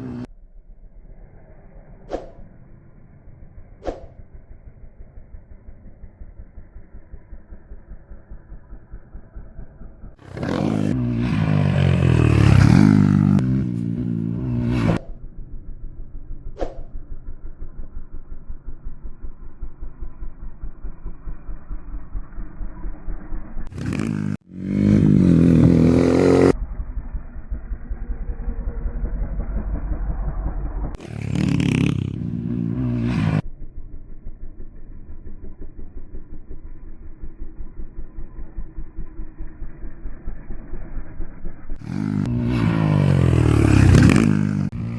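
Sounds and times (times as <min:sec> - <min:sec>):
muffled engine running: 0:00.0 - 0:23.8, 0:26.5 - 0:31.3, 0:32.0 - 0:44.9
motorbike engine revving hard: 0:10.2 - 0:15.1, 0:23.7 - 0:26.6, 0:41.8 - 0:44.9.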